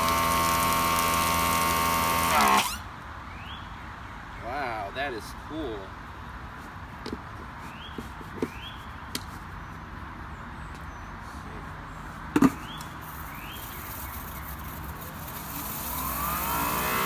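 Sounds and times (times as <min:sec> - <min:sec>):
pressure washer spraying patio: 0:00.0 - 0:02.8, 0:12.2 - 0:17.0.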